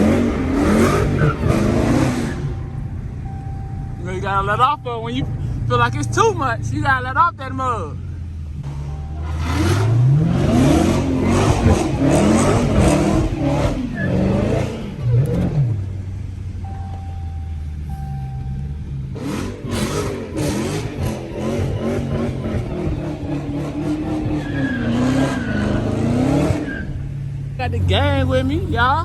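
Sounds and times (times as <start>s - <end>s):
car engine revving: 0.0s - 29.0s
short electronic beeps: 0.7s - 7.2s, 16.6s - 19.5s.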